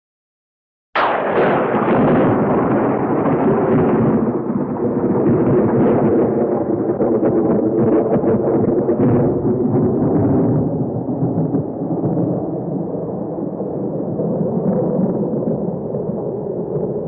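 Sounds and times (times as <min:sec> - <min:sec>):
cartoon explosion with rumble: 0:01.0 - 0:12.3.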